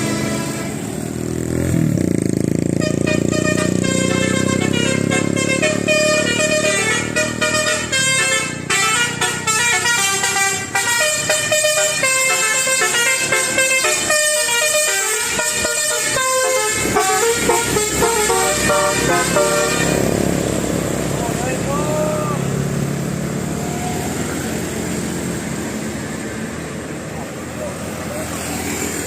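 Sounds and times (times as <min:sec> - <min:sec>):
bus horn playing a tune: 0:00.0 - 0:01.3, 0:02.5 - 0:20.8.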